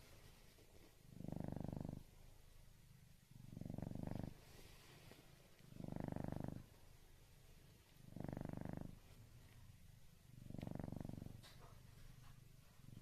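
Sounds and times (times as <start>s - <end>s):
cat snoring: 1.1s - 2.2s, 3.3s - 6.8s, 8.0s - 9.2s, 10.3s - 11.8s.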